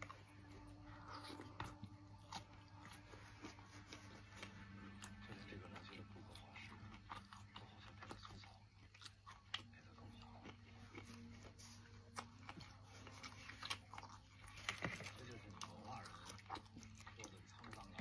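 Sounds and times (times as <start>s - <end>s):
biting and chewing clicks: 4.2s - 18.0s.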